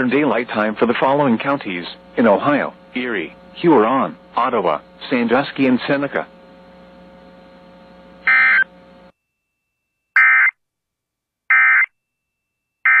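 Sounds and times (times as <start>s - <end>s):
faint broadcast hum: 0.0s - 9.1s
buzzing digital data bursts: 8.2s - 8.7s.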